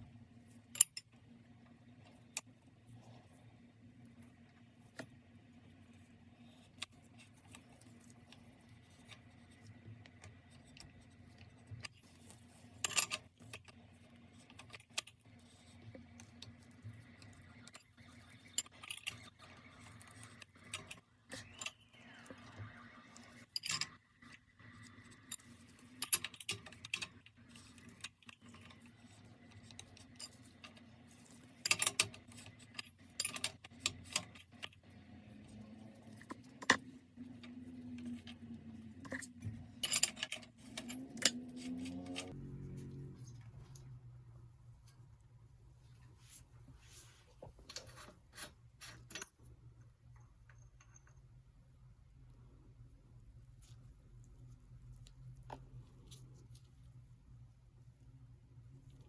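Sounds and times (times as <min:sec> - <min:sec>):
metal tools clinking: 0:39.0 - 0:42.4.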